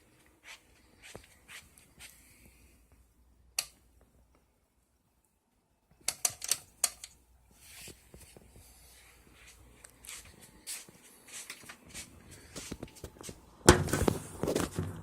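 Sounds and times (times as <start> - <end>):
soft rustle: 0.0 - 3.0, 7.5 - 15.0.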